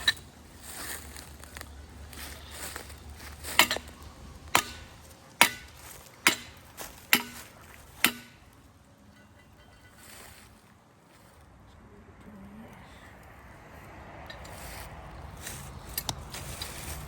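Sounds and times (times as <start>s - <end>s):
hammer blows on metal: 4.6s - 8.5s.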